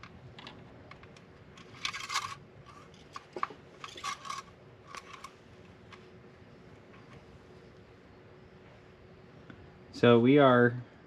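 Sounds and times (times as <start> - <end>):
metal parts scraping: 1.6 - 5.4.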